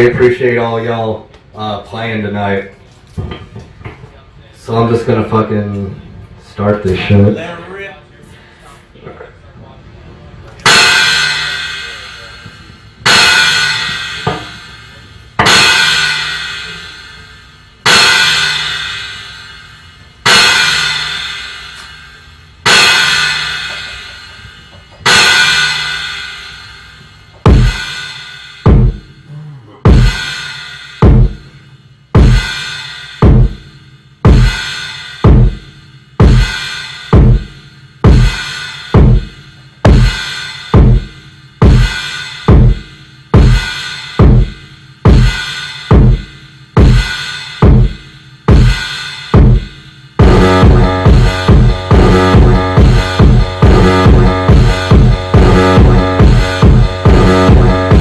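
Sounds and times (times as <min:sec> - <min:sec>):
crashing drum and cymbal hits: 0:10.6 - 0:29.3, 0:29.9 - 0:58.0
heavy bass drum hits: 0:10.7 - 0:17.2, 0:20.3 - 0:28.0, 0:28.6 - 0:29.1, 0:29.9 - 0:30.4, 0:31.0 - 0:31.5, 0:32.2 - 0:32.6, 0:33.2 - 0:33.7, 0:34.3 - 0:58.0.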